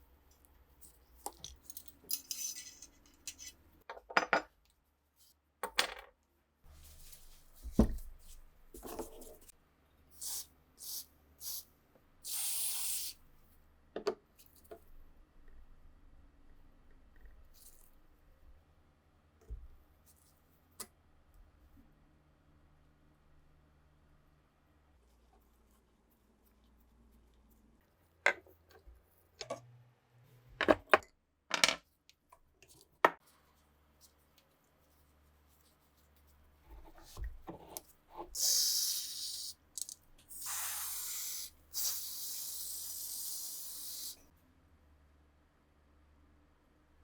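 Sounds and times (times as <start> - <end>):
metal parts clicking and knocking: 1.2 - 4.3
spraying hiss: 40.3 - 44.2.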